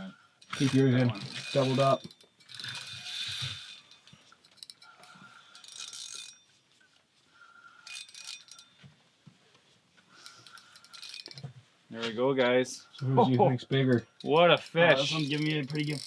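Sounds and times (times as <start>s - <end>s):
fishing reel clicking: 0.4s - 6.5s, 7.8s - 8.7s, 10.1s - 11.5s, 14.0s - 16.0s.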